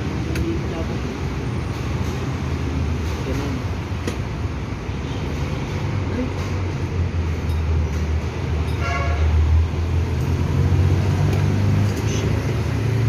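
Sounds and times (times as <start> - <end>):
traffic rumble: 0.0 - 13.0
car horn toot: 8.8 - 9.3.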